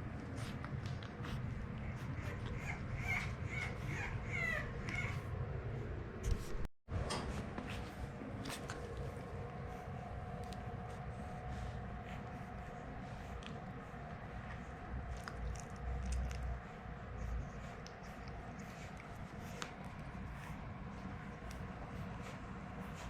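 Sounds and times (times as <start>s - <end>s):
puppy whimpering: 0.8s - 5.4s.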